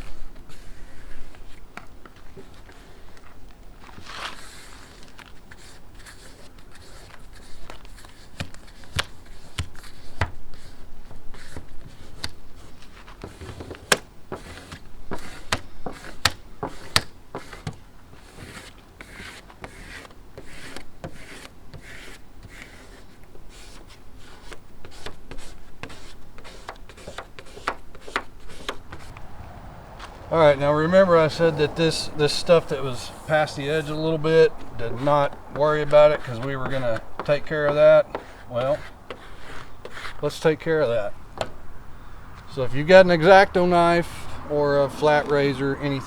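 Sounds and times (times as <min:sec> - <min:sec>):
rubbing and scraping on glass: 0:34.0 - 0:41.6.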